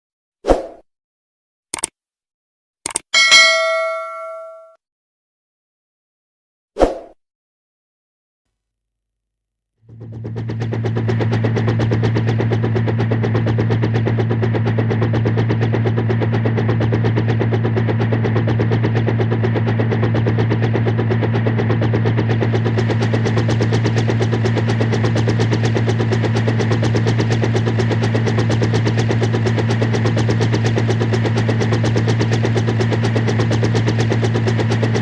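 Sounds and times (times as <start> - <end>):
helicopter rotor chop: 9.9 - 35.0
low engine hum: 9.9 - 35.0.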